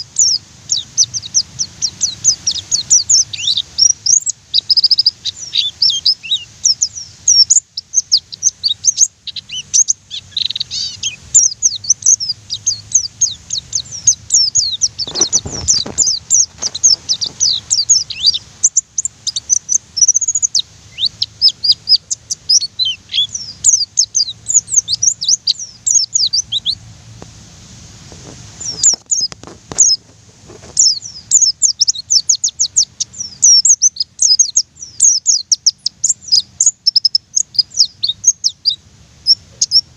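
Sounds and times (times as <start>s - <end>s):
bird singing high chirping notes: 0.0s - 26.9s, 28.6s - 30.0s, 30.8s - 39.9s.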